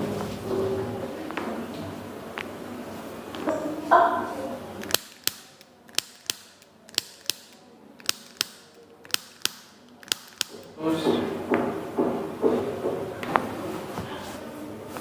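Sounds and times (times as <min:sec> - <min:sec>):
sharp clicks in pairs: 0:04.8 - 0:10.8.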